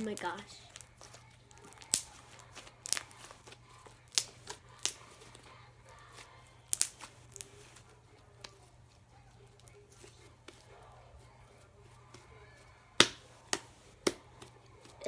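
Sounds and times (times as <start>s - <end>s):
slime crunching and popping: 0.0s - 8.7s.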